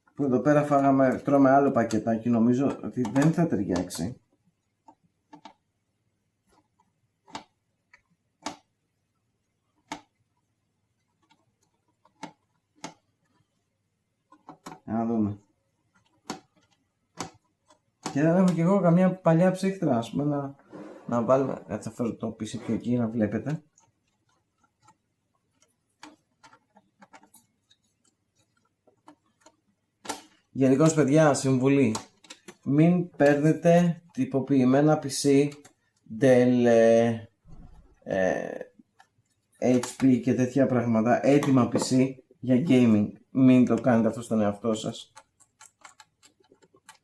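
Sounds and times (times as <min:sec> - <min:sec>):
light clicks and taps: 0:00.0 - 0:05.6, 0:23.2 - 0:36.2, 0:38.6 - 0:47.0.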